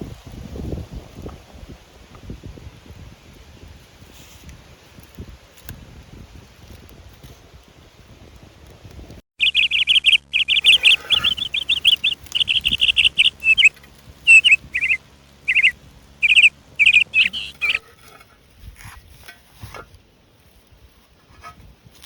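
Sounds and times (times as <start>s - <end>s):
bird trilled chirps: 9.4s - 17.8s.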